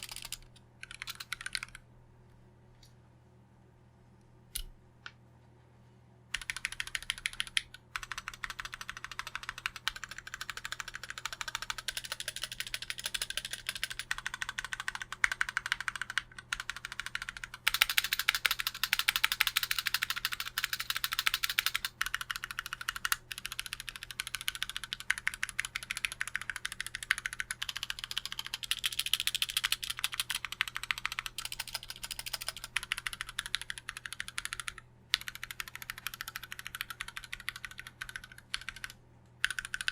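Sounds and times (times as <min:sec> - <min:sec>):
fast mechanical keyboard typing: 0:00.0 - 0:01.8, 0:06.3 - 0:39.9.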